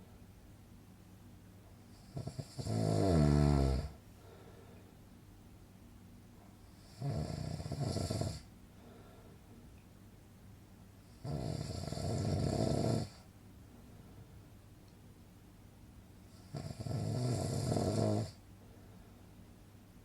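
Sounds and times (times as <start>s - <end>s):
person snoring: 2.0s - 4.0s, 6.8s - 8.5s, 11.2s - 13.2s, 16.3s - 18.4s
quiet breathing: 3.2s - 5.2s, 6.3s - 9.8s, 11.0s - 14.6s, 16.1s - 19.6s.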